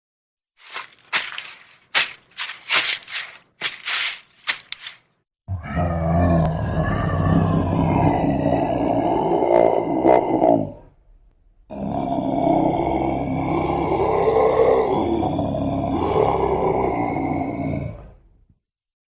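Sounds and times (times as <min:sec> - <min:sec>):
footsteps crunching on forest floor: 0:00.6 - 0:05.1
creature's deep growl: 0:05.5 - 0:11.0, 0:11.6 - 0:18.3.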